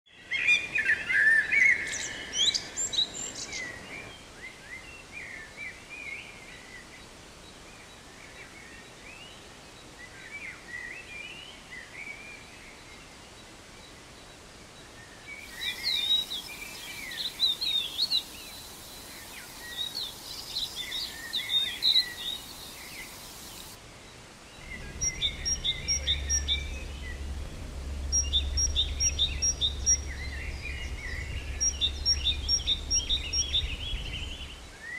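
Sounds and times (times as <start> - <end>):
birds chirping and singing: 15.4 - 23.8, 24.5 - 34.9
low steady hum: 24.4 - 34.8.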